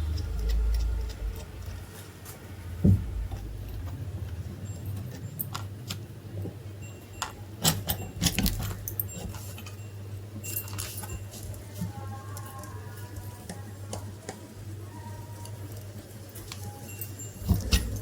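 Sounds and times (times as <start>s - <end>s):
steady low hum: 0.0s - 7.6s, 17.3s - 18.0s
metallic clinks and knocks: 2.6s - 11.8s, 16.4s - 18.0s.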